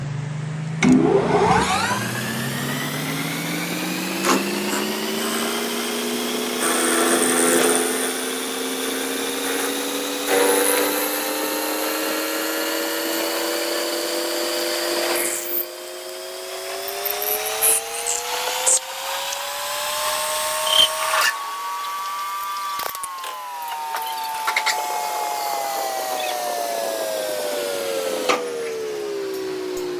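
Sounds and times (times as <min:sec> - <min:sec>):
machine motor whining: 0:00.7 - 0:29.9.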